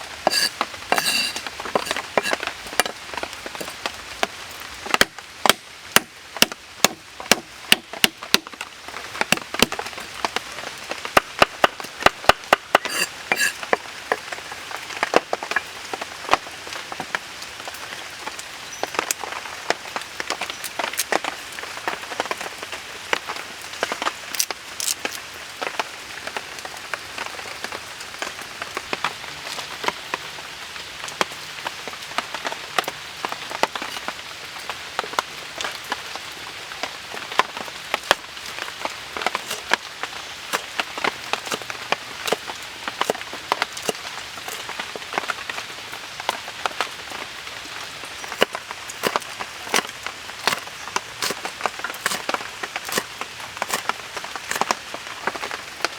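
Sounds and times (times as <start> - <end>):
crackles and pops of frying: 33.5 - 55.9.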